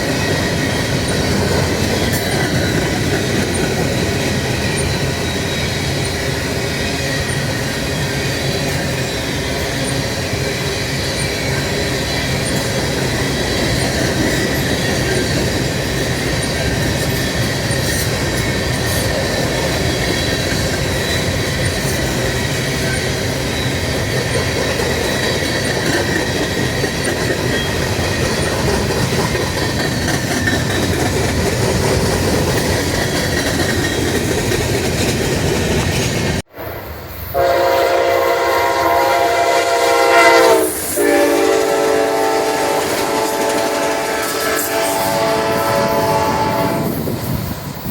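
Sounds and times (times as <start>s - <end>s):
train wheels rumbling on rails: 0.0s - 47.9s
locomotive air horn: 37.3s - 47.0s.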